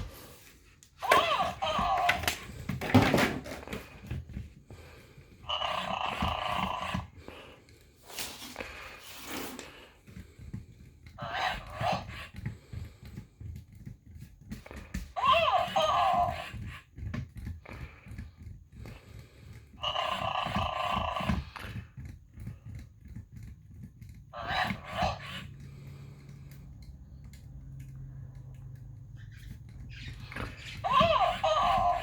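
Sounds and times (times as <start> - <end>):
toy being handled: 0.0 - 4.6
toy voice sounds from speaker: 1.0 - 2.3, 15.2 - 16.6, 24.3 - 25.4, 30.4 - 32.0.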